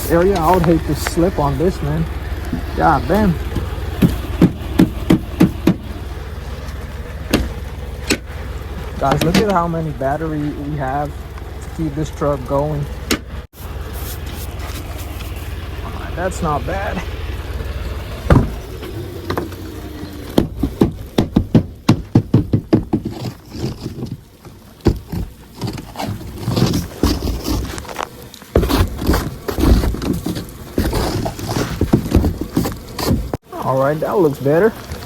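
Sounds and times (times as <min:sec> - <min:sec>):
snow scraping: 0:00.0 - 0:20.8, 0:23.0 - 0:35.0
knocks on truck: 0:02.4 - 0:06.0, 0:18.2 - 0:19.5, 0:20.3 - 0:23.2.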